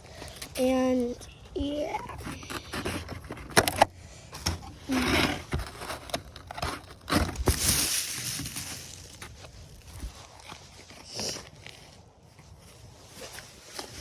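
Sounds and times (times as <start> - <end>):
rustling crinkling noise: 5.0 - 14.0.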